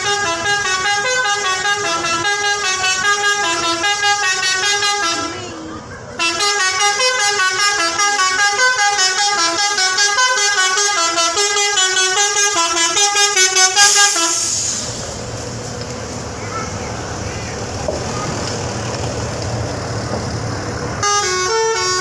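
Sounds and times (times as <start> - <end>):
musical bus horn melody: 0.0 - 14.6, 21.0 - 22.0.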